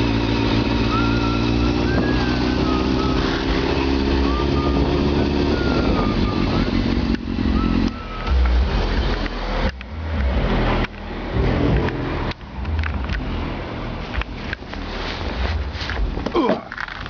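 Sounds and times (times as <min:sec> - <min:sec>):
motorcycle engine running: 0:00.0 - 0:17.0
faint wavering high whistle: 0:00.8 - 0:08.5
wind noise: 0:01.7 - 0:16.3.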